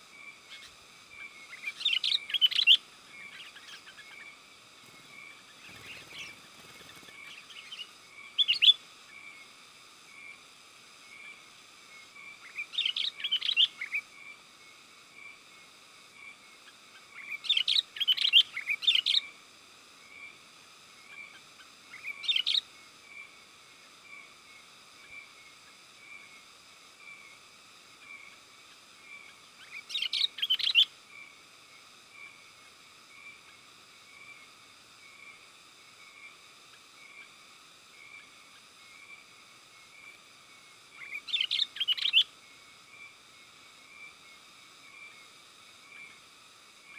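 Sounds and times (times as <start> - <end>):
bulbul chattering chirps: 0.2 - 9.5, 12.3 - 14.1, 16.7 - 19.3, 21.1 - 22.7, 29.2 - 31.0, 40.9 - 42.3.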